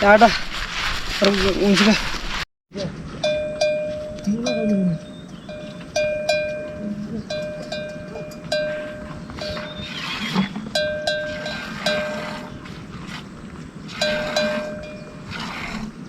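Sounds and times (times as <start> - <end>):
metal livestock bell clanking: 3.1 - 12.8, 13.9 - 15.8.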